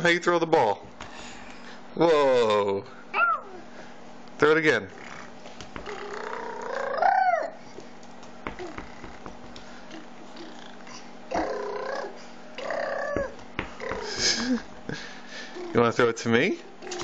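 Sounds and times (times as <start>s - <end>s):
young child squealing: 3.1s - 3.6s, 5.9s - 7.6s.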